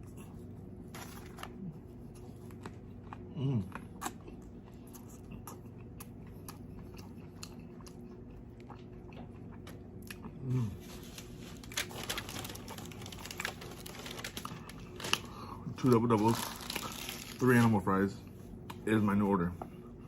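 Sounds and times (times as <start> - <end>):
close-up chewing: 0.0 - 17.4
person humming mm: 10.4 - 10.8.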